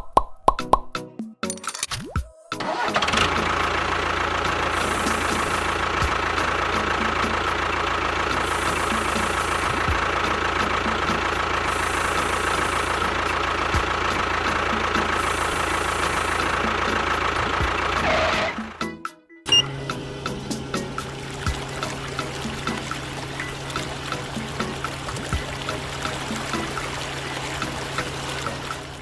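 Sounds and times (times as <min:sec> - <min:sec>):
motor humming and whining: 0:03.0 - 0:18.7.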